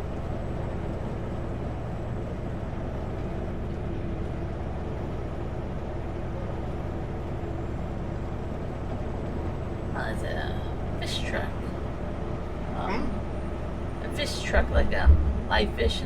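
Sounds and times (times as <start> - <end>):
road noise: 0.0 - 16.0
truck engine drone: 0.0 - 16.0.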